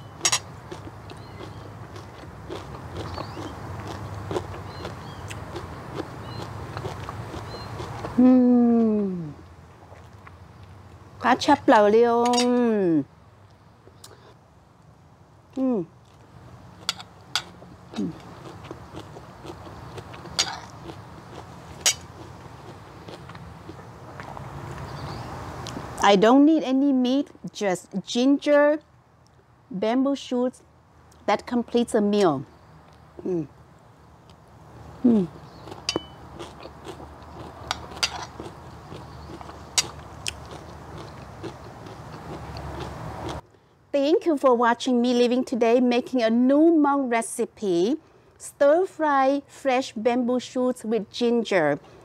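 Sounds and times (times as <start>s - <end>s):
low steady hum: 0.0s - 52.0s
person chewing: 0.1s - 8.3s, 15.5s - 24.8s, 35.0s - 43.4s.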